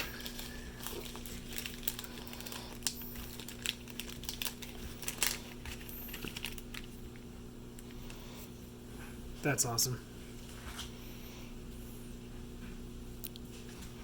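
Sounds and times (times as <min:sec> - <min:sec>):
small items and packaging handled: 0:00.0 - 0:07.1
steady low hum: 0:00.0 - 0:14.0.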